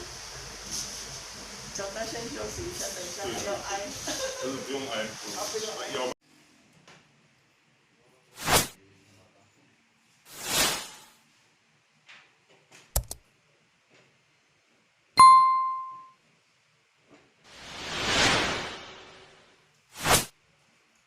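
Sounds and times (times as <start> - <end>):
sharp double click: 13.0 - 13.2
bell-like ding: 15.2 - 16.1
short whooshes: 17.5 - 20.3.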